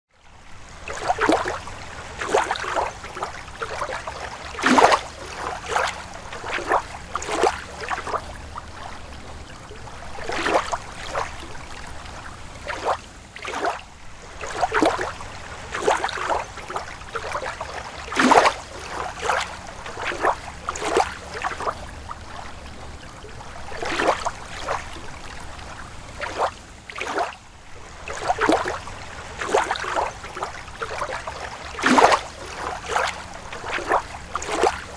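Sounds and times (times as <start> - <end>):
lake waves lapping: 0.2 - 34.9.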